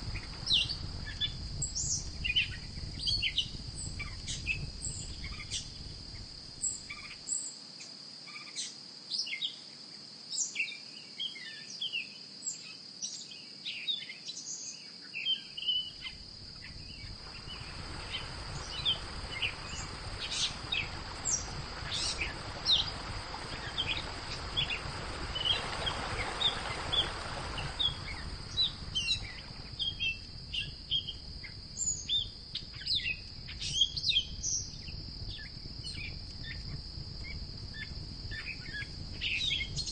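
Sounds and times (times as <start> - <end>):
insects buzzing: 0.0 - 12.3, 13.0 - 39.9
broad rushing noise: 16.4 - 29.8.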